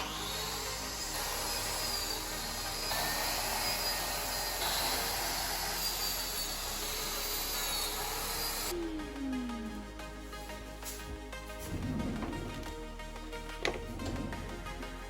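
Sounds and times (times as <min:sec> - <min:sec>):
power tool motor whine: 0:00.0 - 0:08.7.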